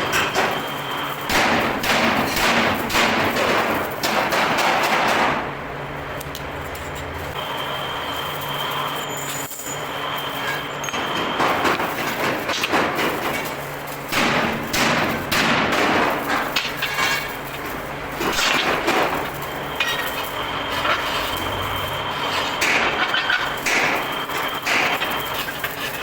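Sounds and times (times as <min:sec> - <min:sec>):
metal scraping and clanging: 0:06.7 - 0:26.0
faint high whine: 0:07.3 - 0:11.5.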